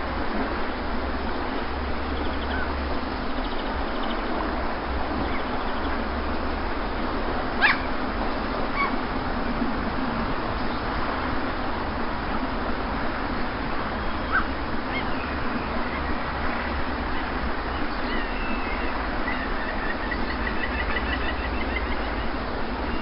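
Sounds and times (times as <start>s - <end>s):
sea surf rushing: 0.0s - 23.0s
faint bird calls: 2.2s - 4.2s, 7.6s - 8.0s, 14.0s - 16.2s, 17.0s - 23.0s.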